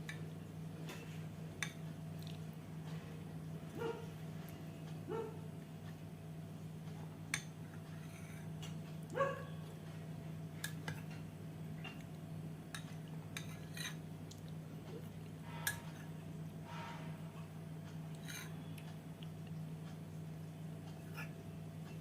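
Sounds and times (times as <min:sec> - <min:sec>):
steady low hum: 0:00.0 - 0:22.0
dog barking: 0:03.8 - 0:04.1, 0:05.1 - 0:05.4, 0:09.2 - 0:09.6
spoon and dishes clinking: 0:18.2 - 0:18.6.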